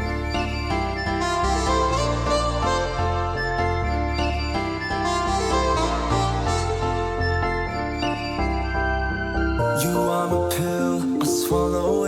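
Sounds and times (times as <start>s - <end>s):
steady bass line: 0.0s - 10.2s
instrumental melody: 0.0s - 12.0s.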